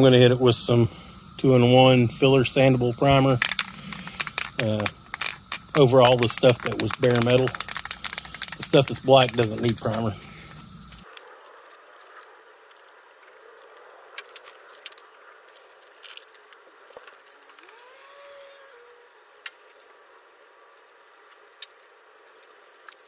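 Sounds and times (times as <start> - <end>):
crickets droning: 0.0 - 23.0.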